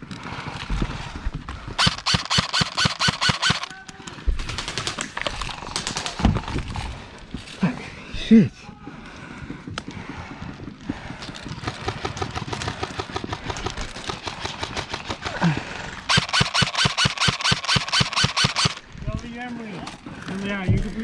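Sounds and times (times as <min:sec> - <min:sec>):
airsoft gun firing bursts: 0:01.8 - 0:03.8, 0:04.4 - 0:06.5, 0:11.6 - 0:19.0.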